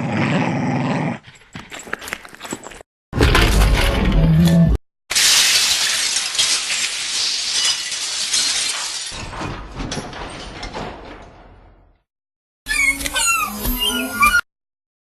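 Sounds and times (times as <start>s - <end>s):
glass breaking and tinkling: 5.1s - 11.3s.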